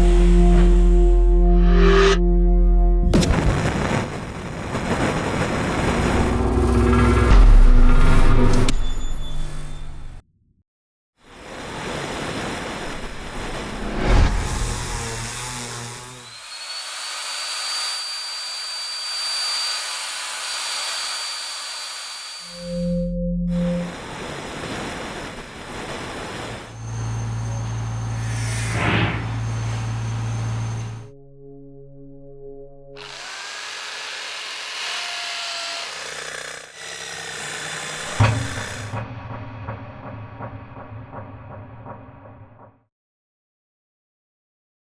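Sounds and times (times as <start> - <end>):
held low chord: 0.0 - 3.4, 22.5 - 24.2
mechanical whirring and grinding: 5.8 - 10.2, 12.8 - 31.1, 33.0 - 39.2
hiss: 11.3 - 22.7
small electric motor whining: 14.4 - 22.8, 33.0 - 39.0
loud thump: 38.0 - 42.7.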